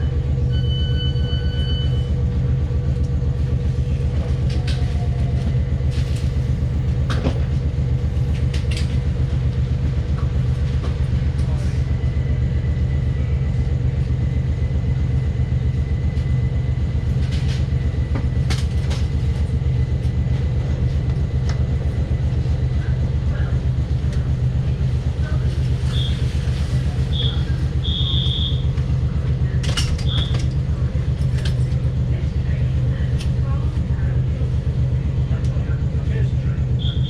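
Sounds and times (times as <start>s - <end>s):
train rumbling: 0.0s - 37.0s
wheels clicking over rails: 28.6s - 32.1s.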